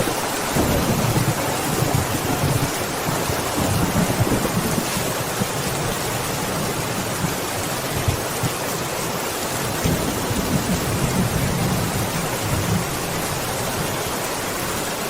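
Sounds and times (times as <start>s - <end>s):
steady rain: 0.0s - 15.0s
low thunder rumble: 0.1s - 7.4s.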